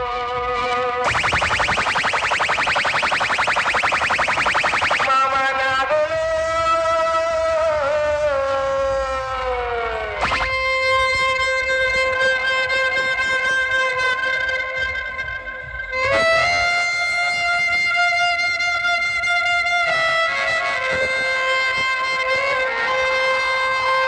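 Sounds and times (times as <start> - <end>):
music on loud sound system: 1.1 - 5.1, 10.2 - 10.7.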